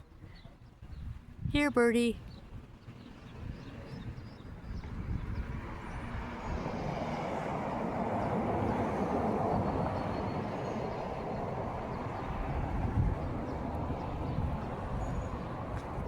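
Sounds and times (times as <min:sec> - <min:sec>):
vehicle passing on road: 0:04.8 - 0:16.0.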